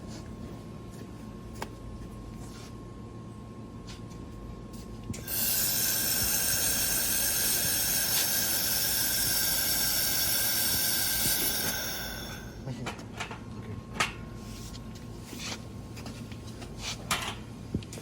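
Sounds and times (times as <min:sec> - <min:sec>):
welding machine hissing and whining: 0:05.2 - 0:12.7.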